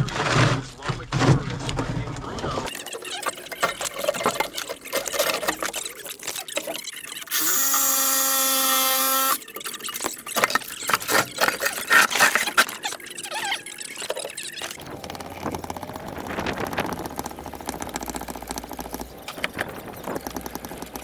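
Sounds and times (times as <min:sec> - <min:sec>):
metal parts clanking: 0:02.7 - 0:16.7
power tool running: 0:07.3 - 0:09.4, 0:14.7 - 0:21.0.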